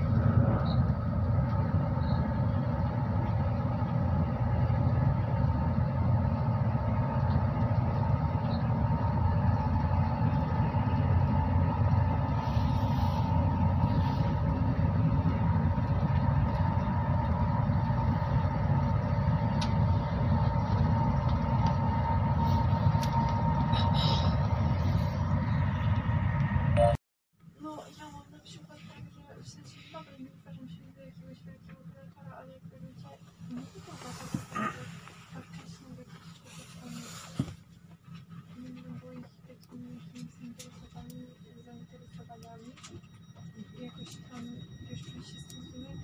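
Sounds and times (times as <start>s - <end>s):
train wheels rumbling on rails: 0.0s - 26.6s
faint steady hum: 0.0s - 46.0s.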